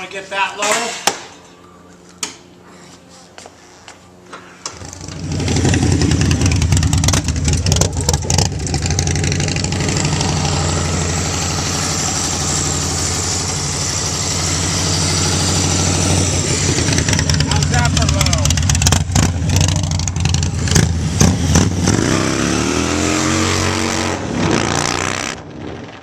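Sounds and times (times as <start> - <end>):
motorcycle engine starting and idling: 4.6 - 22.4.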